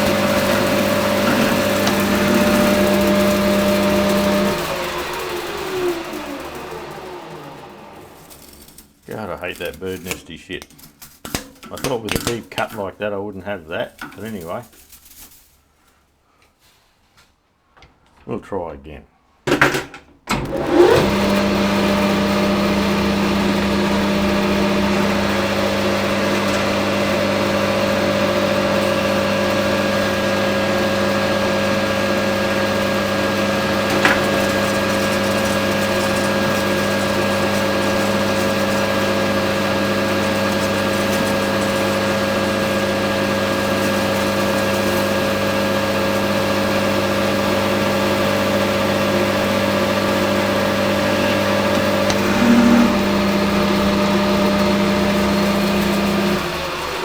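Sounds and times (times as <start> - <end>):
metal lathe running: 0.0 - 8.8, 20.4 - 57.0.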